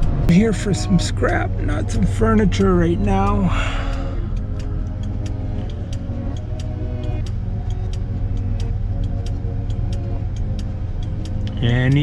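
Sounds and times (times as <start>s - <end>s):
faint music: 0.0s - 12.0s
truck engine rumbling: 0.0s - 12.0s
turn signal relay clicking: 0.0s - 12.0s.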